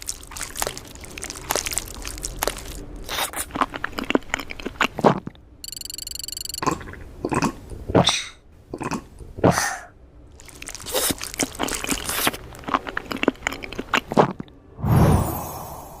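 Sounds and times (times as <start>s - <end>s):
biting food: 0.0s - 5.3s, 10.4s - 14.6s
crackly chewing: 0.0s - 7.5s, 10.3s - 14.6s.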